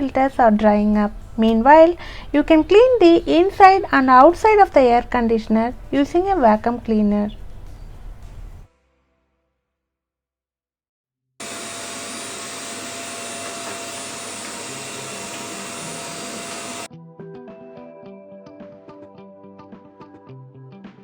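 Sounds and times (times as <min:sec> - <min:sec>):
vacuum cleaner running: 0:11.4 - 0:16.9.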